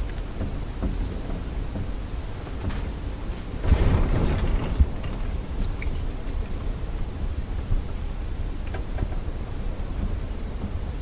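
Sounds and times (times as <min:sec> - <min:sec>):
blizzard wind rumbling: 0:03.0 - 0:08.6.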